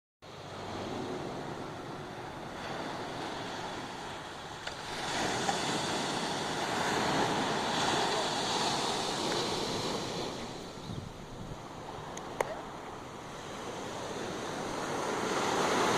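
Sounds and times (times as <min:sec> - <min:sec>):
ocean waves breaking on beach: 0:00.2 - 0:15.9
wind on microphone: 0:00.6 - 0:15.9.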